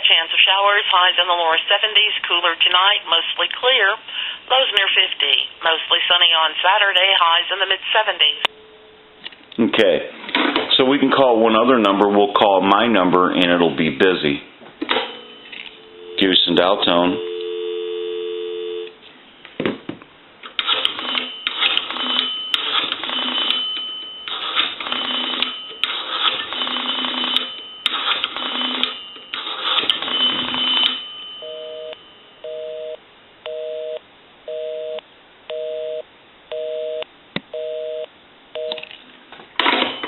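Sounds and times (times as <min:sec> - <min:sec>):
two-tone busy signal beeps: 0:30.2 - 0:37.0.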